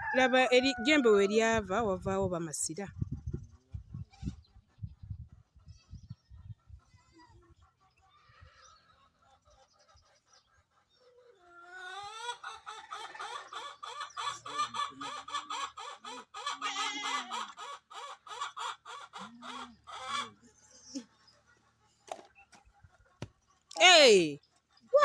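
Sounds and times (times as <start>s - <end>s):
farm animals rapid pulsed cries: 11.5s - 18.1s.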